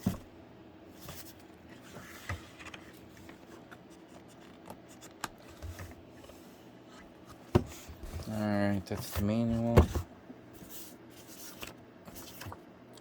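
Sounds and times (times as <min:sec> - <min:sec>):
paper pages rustling: 0:10.6 - 0:12.6.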